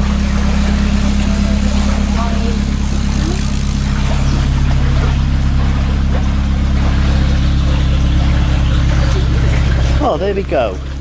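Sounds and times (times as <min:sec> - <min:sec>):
boat engine low hum: 0:00.0 - 0:11.0.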